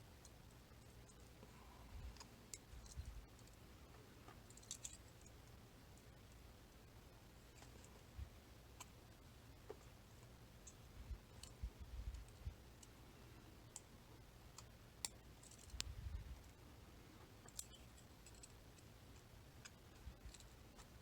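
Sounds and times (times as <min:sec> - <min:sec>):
small clicks of lock parts: 0:04.3 - 0:06.1, 0:14.5 - 0:16.0, 0:17.3 - 0:20.9.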